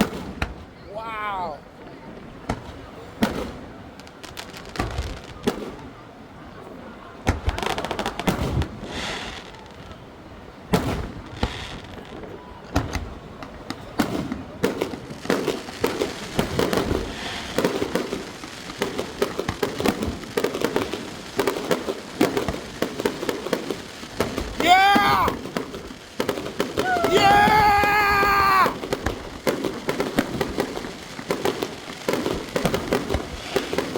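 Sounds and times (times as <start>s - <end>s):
crackling fireworks pops: 0.0s - 0.8s, 1.7s - 6.0s, 7.2s - 10.1s, 10.7s - 33.9s
fireworks bangs: 0.0s - 6.0s, 7.2s - 10.0s, 10.7s - 33.9s.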